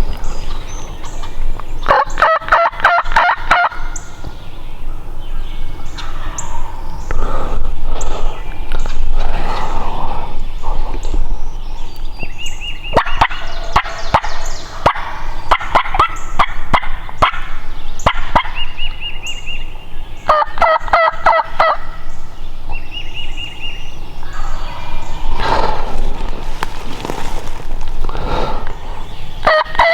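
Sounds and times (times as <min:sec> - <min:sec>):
turkey gobbling: 0:01.9 - 0:04.1, 0:12.9 - 0:18.6, 0:20.3 - 0:22.1, 0:29.4 - 0:29.9.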